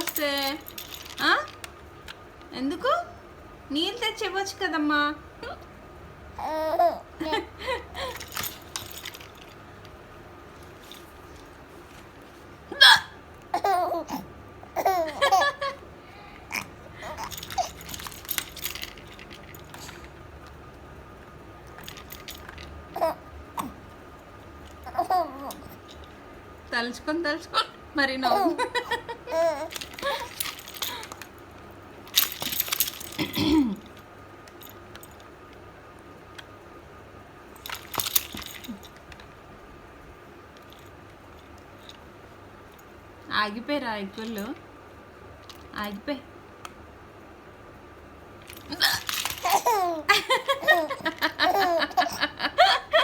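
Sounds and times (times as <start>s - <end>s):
woman hiccuping: 12.7s - 13.2s, 48.7s - 49.1s
baby vocalising: 48.8s - 52.1s.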